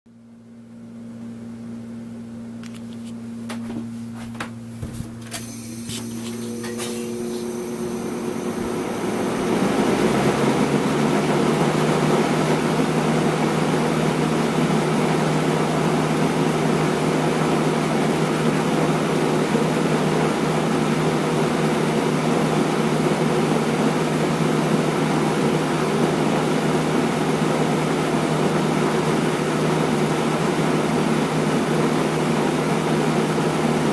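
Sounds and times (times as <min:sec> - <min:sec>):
box fan motor hum: 0:00.2 - 0:33.9
fan blades rushing air: 0:02.8 - 0:16.3.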